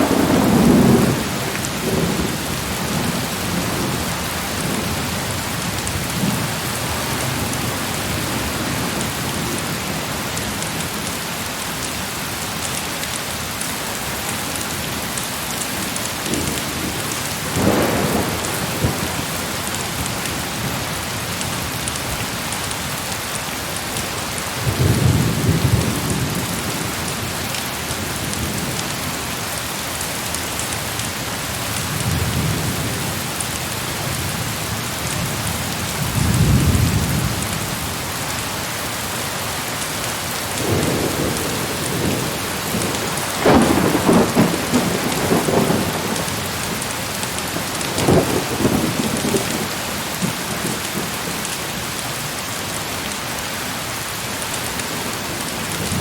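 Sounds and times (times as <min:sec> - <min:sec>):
thunder rumbling: 0:00.0 - 0:09.6, 0:16.0 - 0:20.9, 0:40.6 - 0:51.5
heavy rain: 0:00.0 - 0:56.0.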